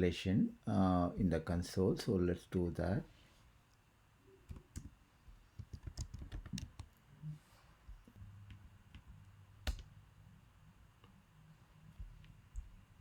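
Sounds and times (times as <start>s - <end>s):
computer keyboard typing: 5.6s - 7.0s.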